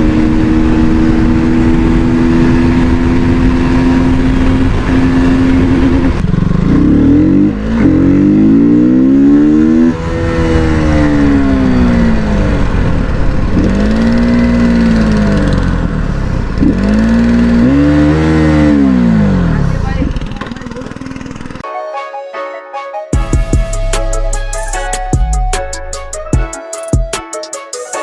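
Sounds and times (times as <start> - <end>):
motorcycle engine revving: 0.0 - 21.6.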